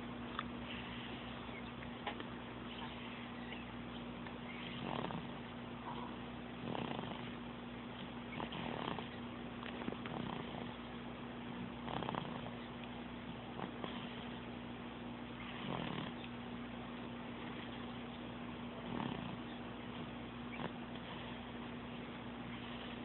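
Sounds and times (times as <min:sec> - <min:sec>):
cat snoring and purring: 0:04.4 - 0:07.4, 0:08.0 - 0:10.9, 0:11.6 - 0:12.7, 0:13.3 - 0:14.5, 0:15.3 - 0:16.3, 0:18.8 - 0:21.6, 0:22.4 - 0:23.0.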